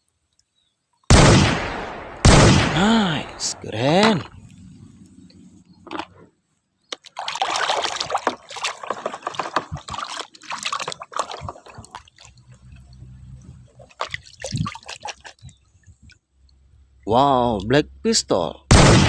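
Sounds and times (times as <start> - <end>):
water splashing and trickling: 6.8 - 16.7.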